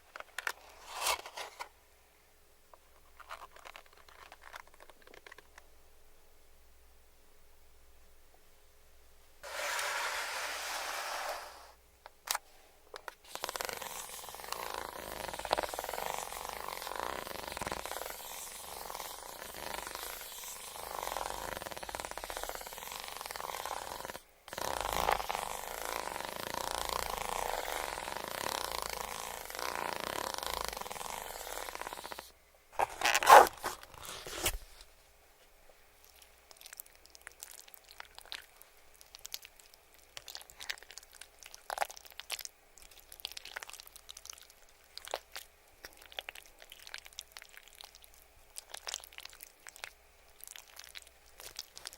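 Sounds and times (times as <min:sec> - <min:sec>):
rustling hiss: 0:09.4 - 0:11.8.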